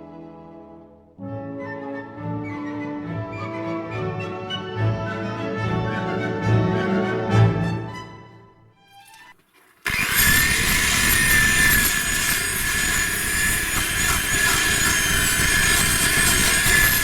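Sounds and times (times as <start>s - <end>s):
power tool grinding metal: 9.8s - 17.0s.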